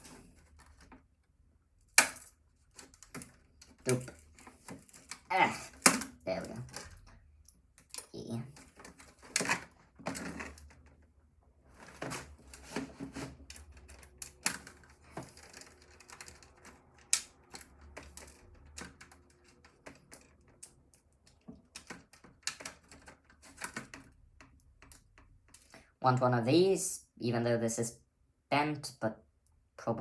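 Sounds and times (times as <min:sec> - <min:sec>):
small parts clicking and rattling: 0:01.8 - 0:11.1, 0:11.7 - 0:25.8.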